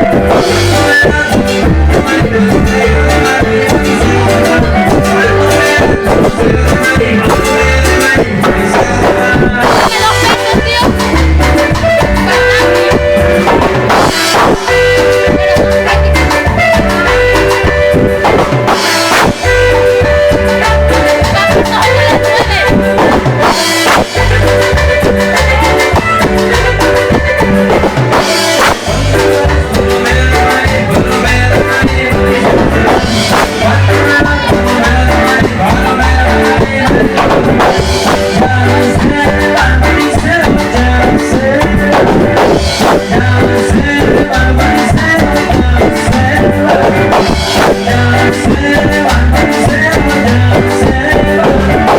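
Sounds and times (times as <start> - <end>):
bass line: 0.0 - 51.9
drum beat: 0.0 - 51.9
salsa music on keyboards: 0.0 - 51.9.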